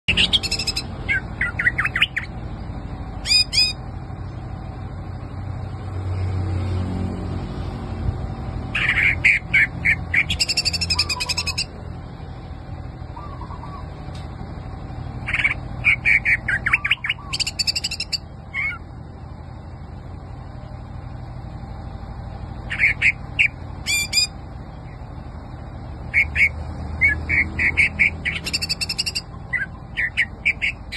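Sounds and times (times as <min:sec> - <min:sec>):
bird singing chirps and trills: 0:00.1 - 0:02.4, 0:03.2 - 0:03.8, 0:08.7 - 0:11.8, 0:13.1 - 0:14.0, 0:15.2 - 0:18.9, 0:22.6 - 0:25.1, 0:26.0 - 0:30.9
low background hum: 0:00.1 - 0:30.9.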